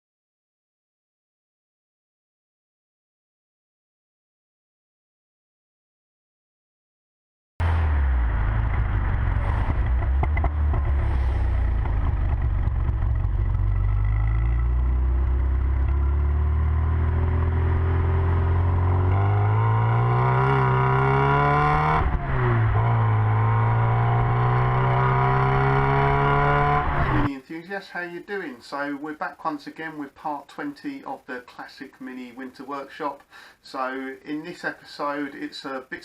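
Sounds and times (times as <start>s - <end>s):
car engine accelerating: 7.6s - 27.3s.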